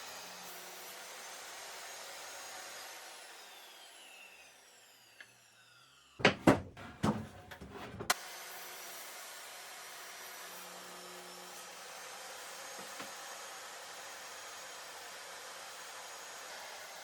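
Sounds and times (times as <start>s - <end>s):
table saw whine coasting down: 0.0s - 6.3s, 8.1s - 17.0s
wooden knocks and clatter: 6.2s - 8.2s.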